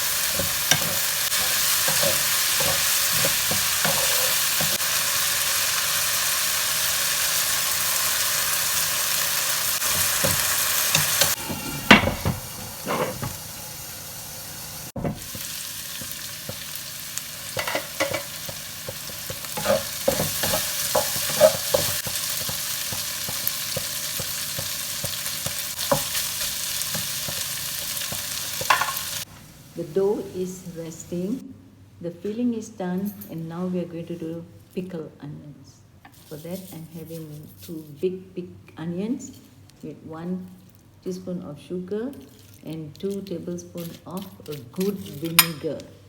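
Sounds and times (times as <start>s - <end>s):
spatula scraping and knocking pan: 0.0s - 4.8s, 9.8s - 13.6s, 14.9s - 16.8s, 17.5s - 29.2s
food sizzling in a pan: 0.0s - 30.8s.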